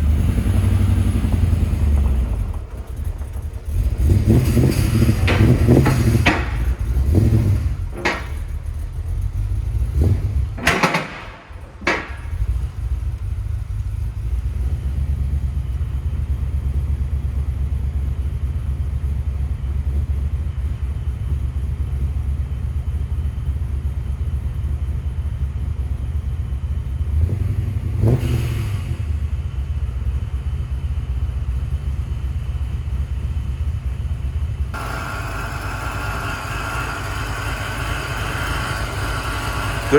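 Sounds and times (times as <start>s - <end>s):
car engine idling: 0.0s - 39.9s
knocks: 4.4s - 8.7s, 10.6s - 12.7s.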